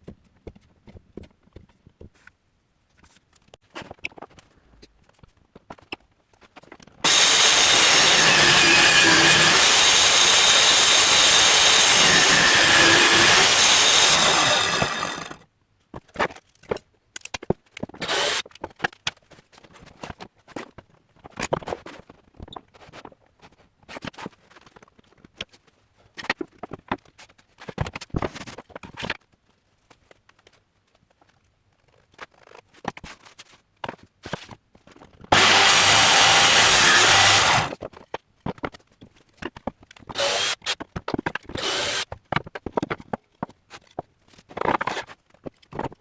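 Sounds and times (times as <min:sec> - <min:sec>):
power tool whining: 0:07.1 - 0:15.4, 0:35.3 - 0:37.8, 0:40.2 - 0:40.6, 0:41.6 - 0:42.0.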